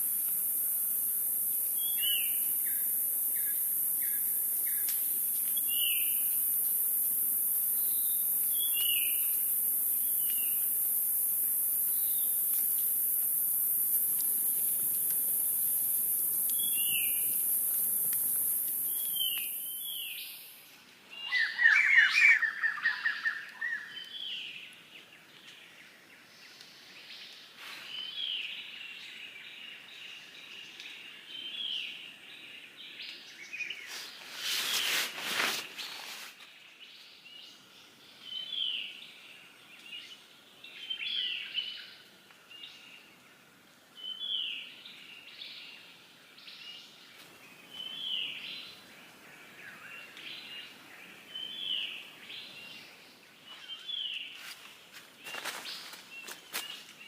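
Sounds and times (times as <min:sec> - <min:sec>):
high-pitched hiss: 0:00.0 - 0:20.9, 0:33.3 - 0:38.6.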